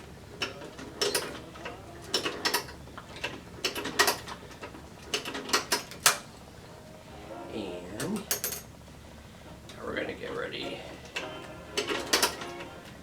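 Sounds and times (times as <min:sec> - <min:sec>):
sewing machine clacking: 0:00.4 - 0:06.2.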